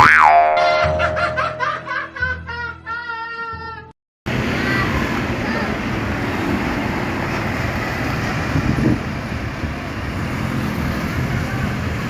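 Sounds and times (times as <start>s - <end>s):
tyre and road hiss: 4.3s - 12.0s
vehicles passing on road: 4.3s - 12.0s.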